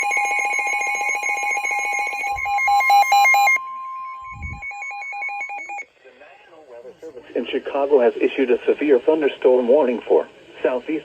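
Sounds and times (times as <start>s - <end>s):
pulsing alarm beeps: 0.0s - 5.9s
steady warning tone: 0.0s - 5.9s.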